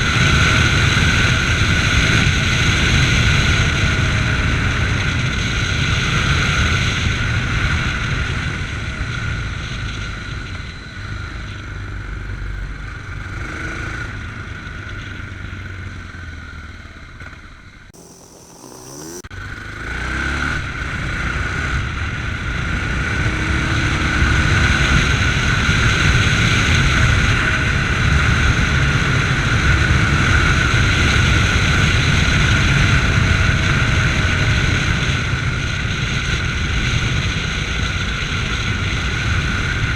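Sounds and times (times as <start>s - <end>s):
motorcycle engine running: 18.0s - 19.6s.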